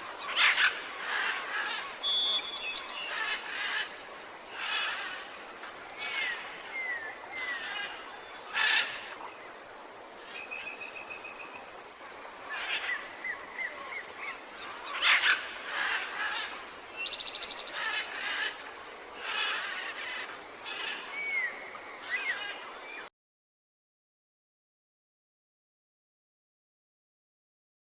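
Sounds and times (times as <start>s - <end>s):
birds calling: 0.0s - 5.3s, 12.4s - 23.1s
steady background hiss: 0.0s - 23.1s
bird trill: 2.0s - 3.4s.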